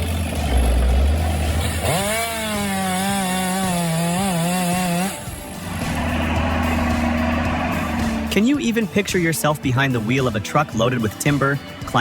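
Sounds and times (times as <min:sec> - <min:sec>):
chainsaw revving: 0:00.0 - 0:08.4
low engine rumble: 0:05.2 - 0:08.7.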